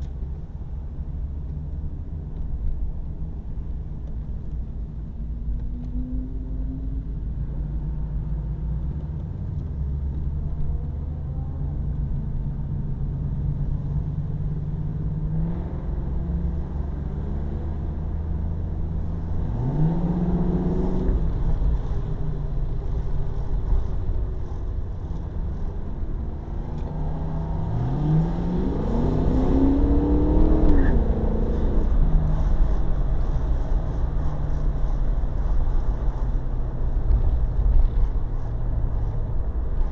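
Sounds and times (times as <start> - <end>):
car engine revving: 24.0 - 39.9.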